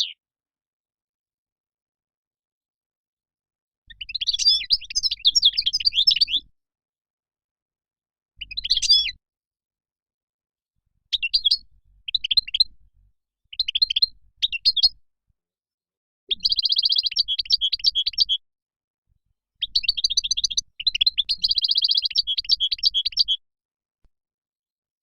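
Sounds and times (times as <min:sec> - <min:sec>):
goldfinch twittering and trilling: 0:03.9 - 0:06.4, 0:08.4 - 0:09.2, 0:11.1 - 0:12.8, 0:13.5 - 0:15.0, 0:16.3 - 0:18.4, 0:19.6 - 0:23.4.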